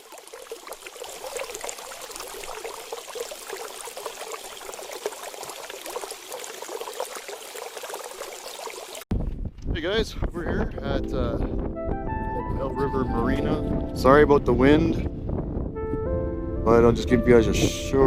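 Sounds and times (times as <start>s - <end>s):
water trickling and splashing: 0.0s - 9.1s.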